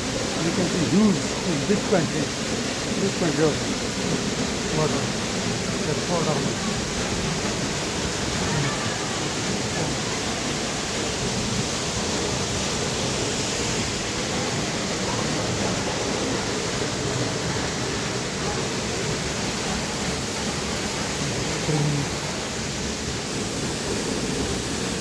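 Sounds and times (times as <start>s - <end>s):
waterfall rushing: 0.0s - 25.0s.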